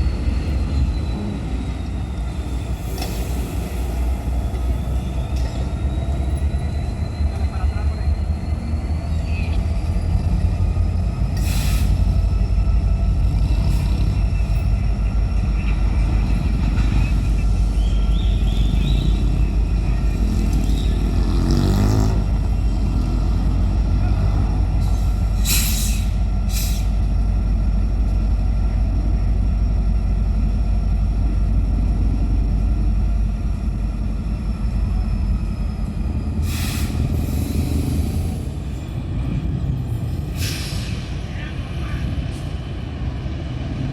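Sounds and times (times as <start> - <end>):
diesel locomotives rumbling: 0.0 - 43.9
air brake hiss: 11.4 - 12.1, 24.8 - 27.0, 36.4 - 38.4, 40.3 - 41.1.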